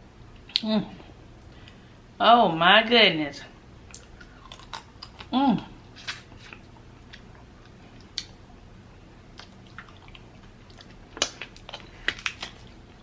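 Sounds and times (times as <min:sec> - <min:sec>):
wet chewing and mouth smacks: 0:06.0 - 0:08.4, 0:09.3 - 0:12.8.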